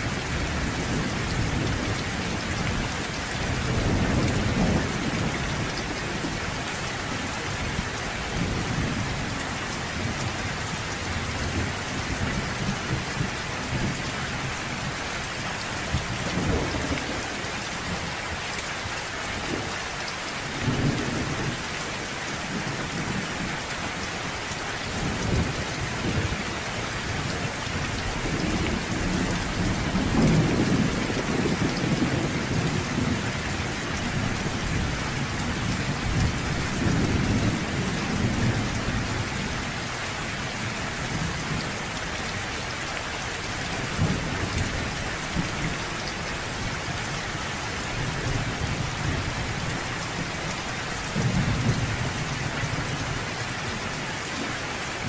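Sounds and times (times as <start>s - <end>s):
thunder rumbling: 27.7s - 39.6s.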